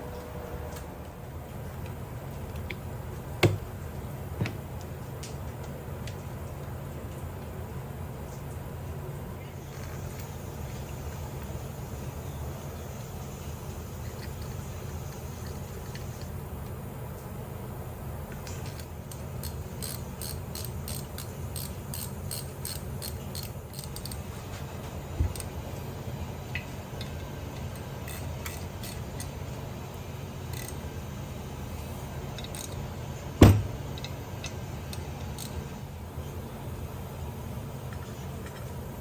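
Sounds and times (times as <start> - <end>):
steady low hum: 0.0 - 39.0
small metal parts clicking: 18.4 - 24.3, 27.0 - 29.4, 30.5 - 30.8, 32.4 - 32.8, 34.0 - 35.6
knock: 33.4 - 33.7.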